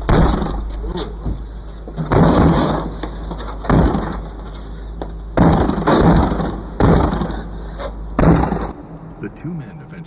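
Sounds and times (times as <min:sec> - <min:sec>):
kicks banging on front door: 0:03.6 - 0:04.2
camera microphone hum and hiss: 0:08.6 - 0:10.0.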